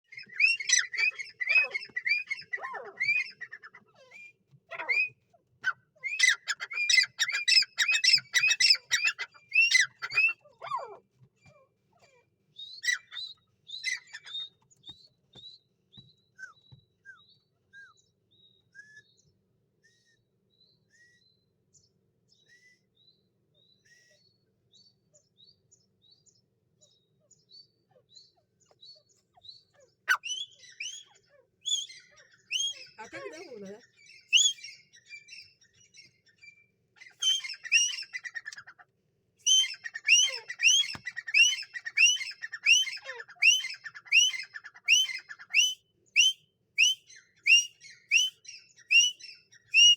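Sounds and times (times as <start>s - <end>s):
bird chirps: 0.0s - 11.6s, 12.6s - 38.8s, 39.4s - 49.9s
francolin shrill calls: 0.1s - 5.2s, 6.0s - 10.8s, 30.1s - 31.1s, 31.7s - 35.5s, 37.0s - 38.6s, 39.4s - 49.9s.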